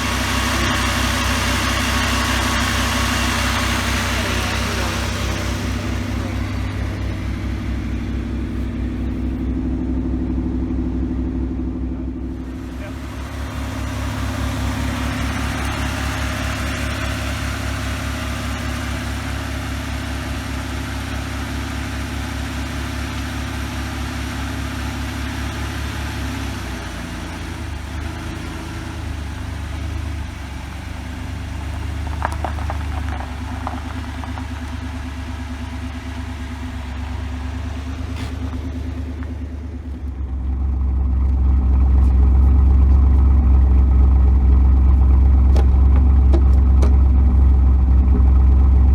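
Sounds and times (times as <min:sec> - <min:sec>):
car engine idling: 0:00.0 - 0:48.9.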